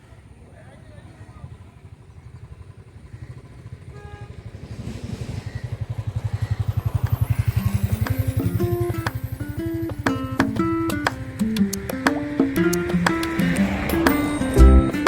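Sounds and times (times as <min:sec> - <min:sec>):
motorboat engine running: 0:01.8 - 0:15.0
plucked music notes: 0:08.2 - 0:15.0.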